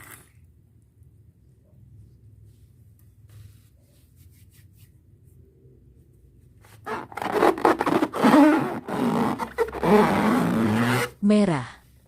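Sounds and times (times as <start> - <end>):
rubbing rubber balloon: 6.6 - 11.2
air squealing out of balloon: 6.9 - 11.1.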